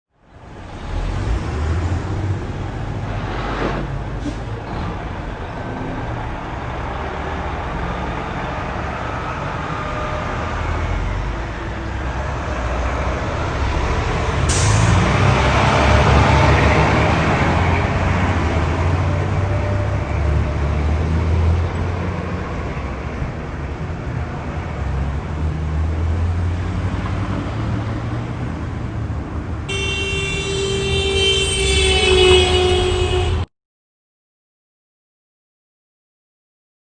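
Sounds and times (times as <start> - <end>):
car engine and road rumble: 0.1 - 33.5
car horn: 29.7 - 33.5.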